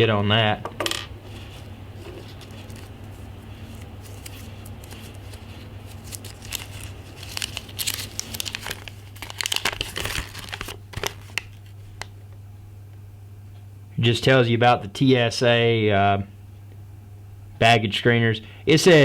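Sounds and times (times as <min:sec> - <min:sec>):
paper leaflet crinkling: 0:01.2 - 0:12.2.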